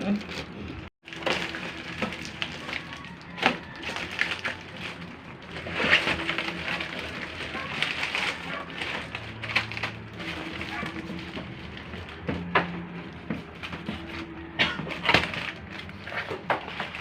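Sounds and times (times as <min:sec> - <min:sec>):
packaging crinkling: 0:00.2 - 0:17.0.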